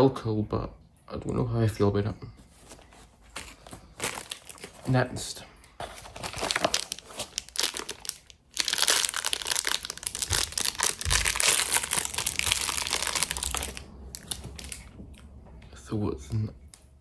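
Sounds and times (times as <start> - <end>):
plastic packaging crinkling: 2.4 - 14.9.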